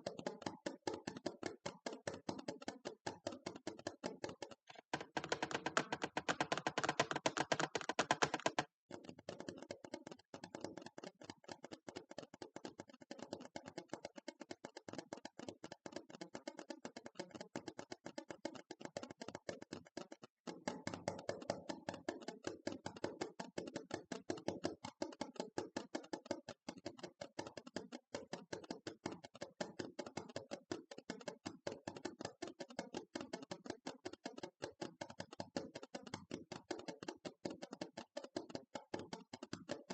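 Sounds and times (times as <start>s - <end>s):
light tapping on hard object: 4.7s - 8.7s.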